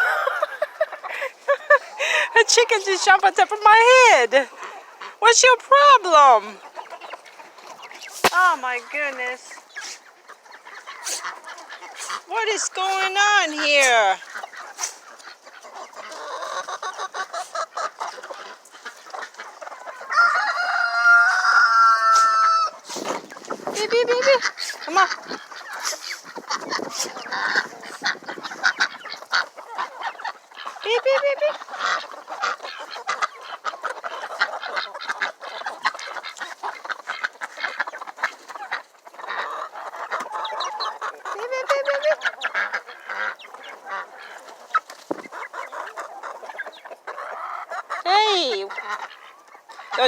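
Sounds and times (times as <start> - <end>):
chickens clucking: 0.0 - 50.0
rooster crowing: 20.0 - 22.8.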